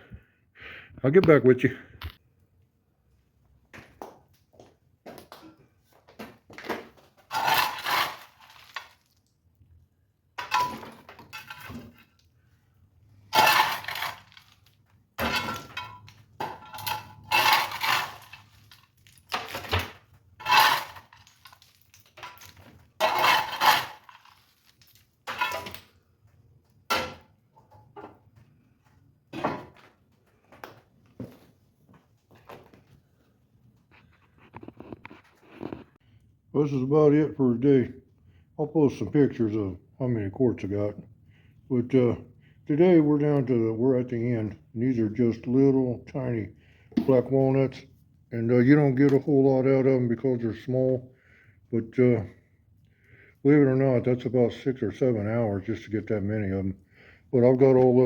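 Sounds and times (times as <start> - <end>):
walnut shells clattering: 7.3 - 9.2, 13.4 - 25.9.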